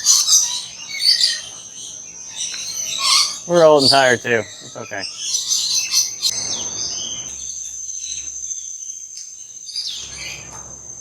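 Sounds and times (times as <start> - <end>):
birds chirping: 0.0 - 7.3.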